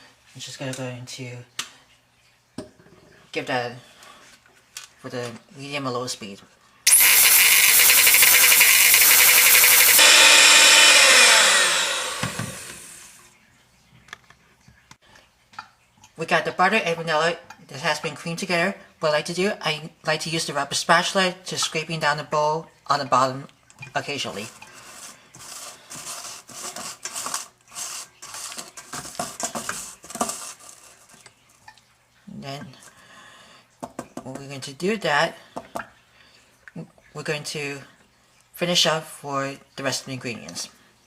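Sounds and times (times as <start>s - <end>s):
electric mixer motor whine: 6.9s - 13.2s
spatula scraping mixing bowl: 24.3s - 31.2s.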